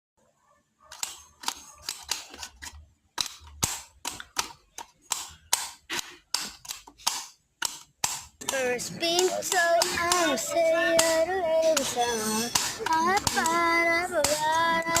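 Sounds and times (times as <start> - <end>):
sharp hand strikes in rhythm: 5.1 - 15.0.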